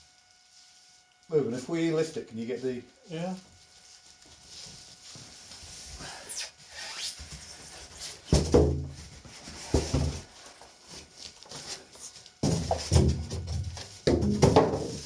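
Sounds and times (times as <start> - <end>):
cardboard and foam squeaking: 3.2 - 14.0.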